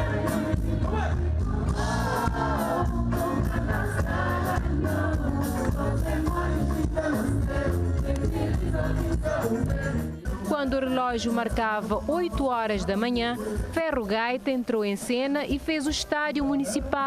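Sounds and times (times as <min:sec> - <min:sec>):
person singing: 0:00.0 - 0:10.5
live band with bass beat: 0:00.0 - 0:14.4.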